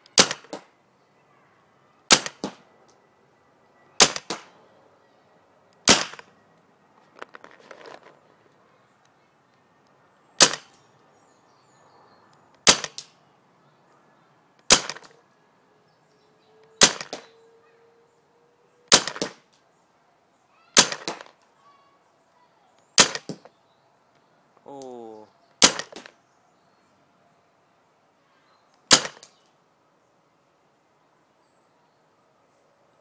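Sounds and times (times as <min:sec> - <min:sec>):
paintball marker shots: 0:00.1 - 0:00.8, 0:02.1 - 0:02.7, 0:04.0 - 0:04.5, 0:05.8 - 0:06.3, 0:10.4 - 0:10.8, 0:12.6 - 0:13.1, 0:14.6 - 0:15.2, 0:16.8 - 0:17.3, 0:18.9 - 0:19.6, 0:20.8 - 0:21.4, 0:23.0 - 0:23.5, 0:25.6 - 0:26.2, 0:28.9 - 0:29.4.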